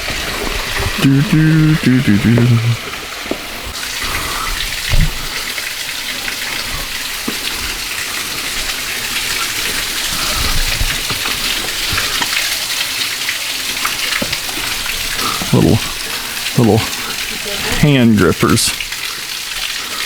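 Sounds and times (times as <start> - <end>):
water rushing over rock: 0.0 - 20.0.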